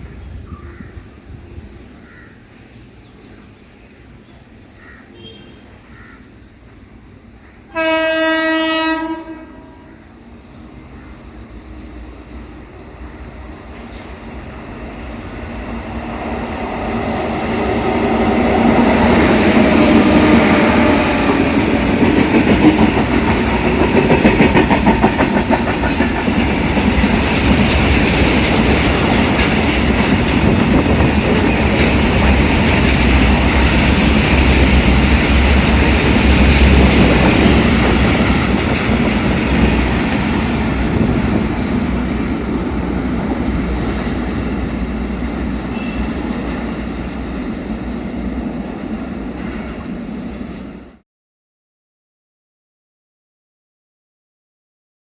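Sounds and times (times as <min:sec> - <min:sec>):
train rumble: 0:00.0 - 0:51.0
train horn blast: 0:07.7 - 0:10.0, 0:45.6 - 0:46.4
wheels clacking over rail joints: 0:11.8 - 0:48.3.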